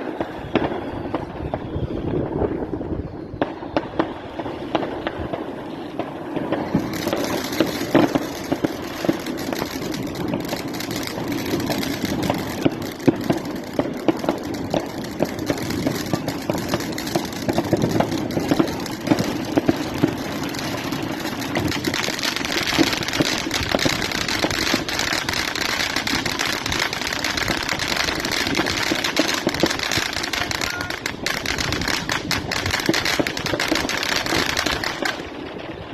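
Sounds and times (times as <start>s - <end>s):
fireworks bangs: 0.0s - 35.9s
fireworks crackling: 0.0s - 35.9s.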